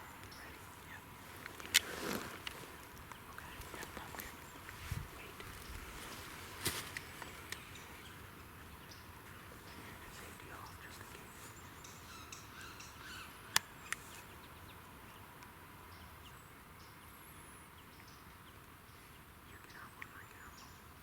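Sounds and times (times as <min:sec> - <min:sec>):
bird calls: 0:00.0 - 0:21.0
sharp clicks: 0:01.4 - 0:05.8.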